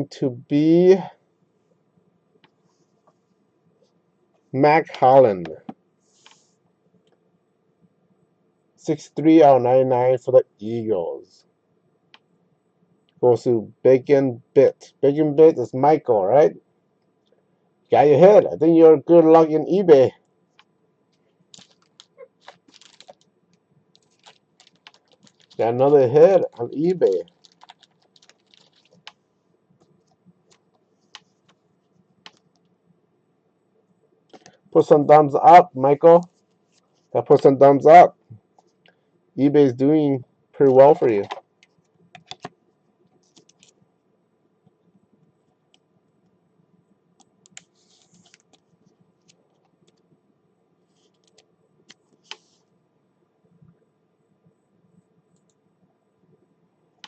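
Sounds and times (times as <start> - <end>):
trading cards clicking: 24.0 - 25.6, 27.0 - 29.2.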